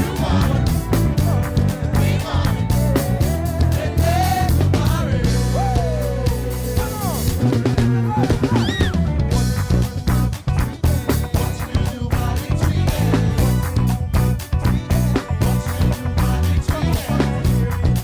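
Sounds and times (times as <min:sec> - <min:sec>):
sliding melody line: 0:00.0 - 0:10.4
band playing upbeat music: 0:00.0 - 0:18.0
drum kit beat: 0:00.0 - 0:18.0
heavy bass notes: 0:00.0 - 0:18.0.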